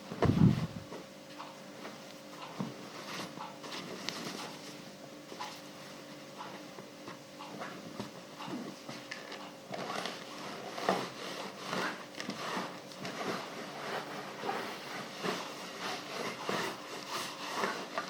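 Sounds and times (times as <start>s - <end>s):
iron sliding over fabric: 9.8s - 18.0s.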